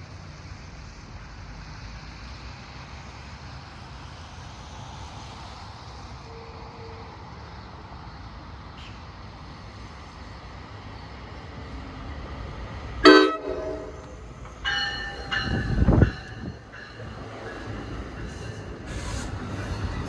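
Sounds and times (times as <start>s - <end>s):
train horn blasts: 13.0s - 14.2s.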